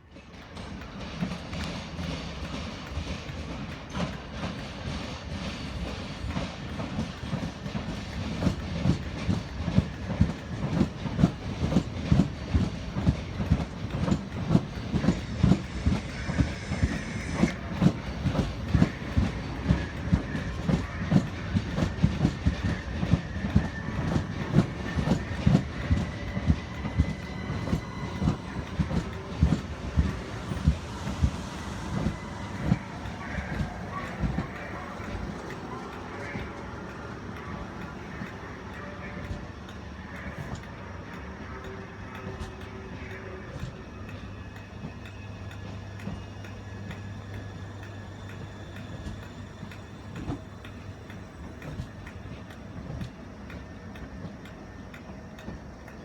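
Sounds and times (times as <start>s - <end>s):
train wheels clattering over rail joints: 0.0s - 56.0s
faint high wheel squeal: 13.5s - 52.9s.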